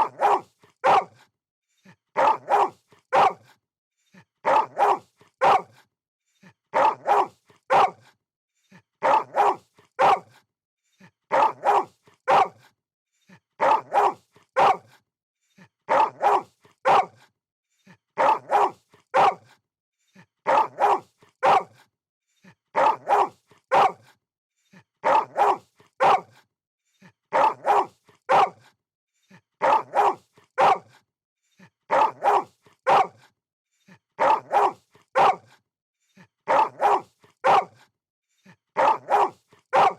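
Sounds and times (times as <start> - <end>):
dog barking: 0.0 - 1.3, 2.2 - 3.5, 4.4 - 5.8, 6.7 - 8.2, 9.0 - 10.4, 11.3 - 12.7, 13.6 - 15.0, 15.9 - 17.3, 18.2 - 19.6, 20.4 - 21.9, 22.8 - 24.2, 25.0 - 26.4, 27.3 - 28.7, 29.6 - 31.0, 31.9 - 33.3, 34.2 - 35.6, 36.5 - 37.9, 38.8 - 39.9.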